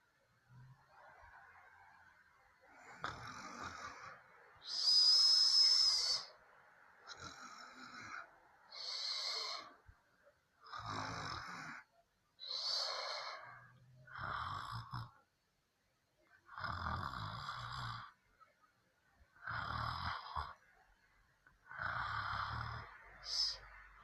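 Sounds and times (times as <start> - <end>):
woman snoring: 2.8 - 6.3, 7.1 - 9.8, 10.7 - 15.1, 16.5 - 18.2, 19.4 - 20.6, 21.7 - 23.7.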